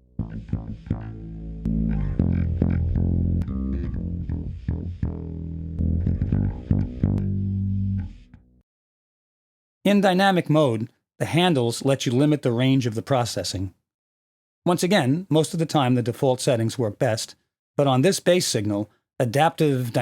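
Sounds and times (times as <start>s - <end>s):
electric bass guitar notes: 0.0s - 8.6s.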